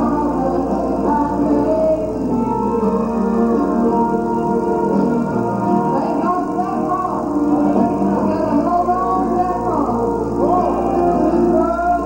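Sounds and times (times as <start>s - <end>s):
instrumental gospel music: 0.0s - 12.0s.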